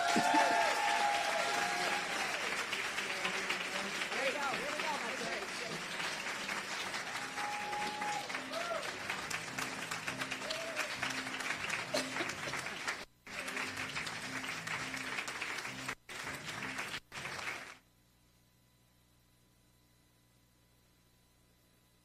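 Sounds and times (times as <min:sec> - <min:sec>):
audience applauding: 0:00.0 - 0:17.8
music: 0:00.0 - 0:17.8
faint low hum: 0:16.1 - 0:22.0.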